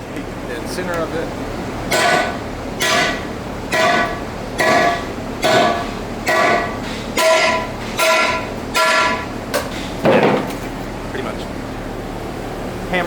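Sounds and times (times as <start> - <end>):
hammer striking ringing metal rim: 1.9 - 9.3.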